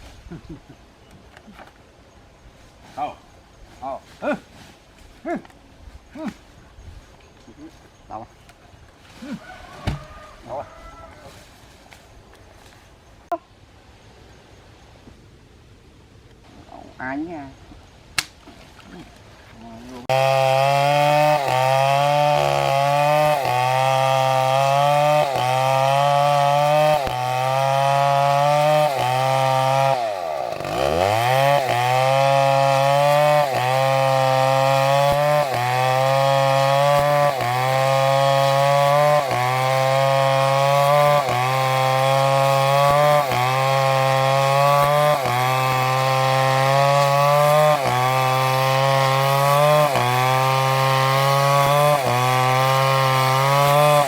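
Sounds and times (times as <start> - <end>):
chainsaw cutting wood: 9.2 - 10.3, 20.0 - 54.0.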